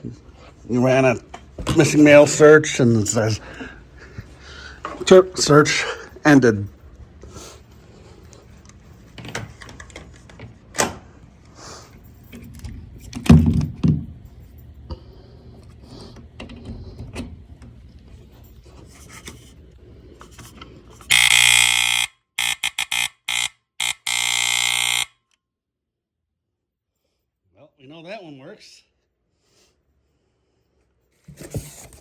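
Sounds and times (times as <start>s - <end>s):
smoke alarm test tone: 21.1s - 25.2s.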